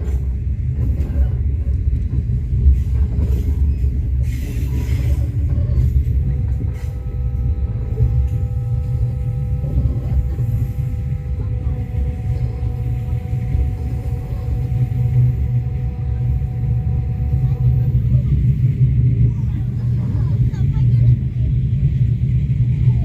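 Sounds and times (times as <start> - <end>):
train rumbling: 0.0 - 23.0
faint steady hums: 5.9 - 23.0.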